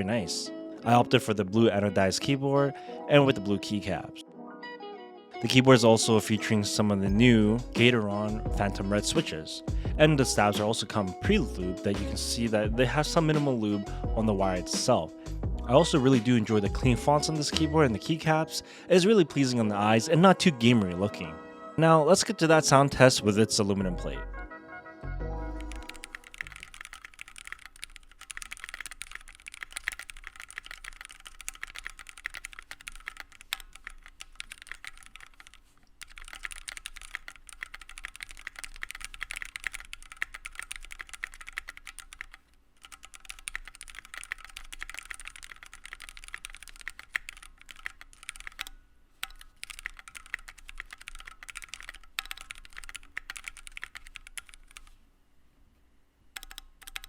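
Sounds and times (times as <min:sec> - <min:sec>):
mechanical keyboard typing: 0:25.6 - 0:55.0, 0:56.4 - 0:57.0.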